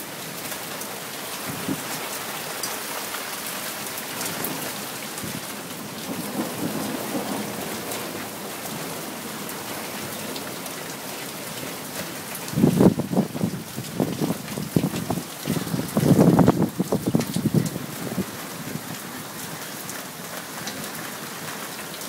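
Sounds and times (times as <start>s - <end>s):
low rumble of thunder: 5.3s - 9.8s.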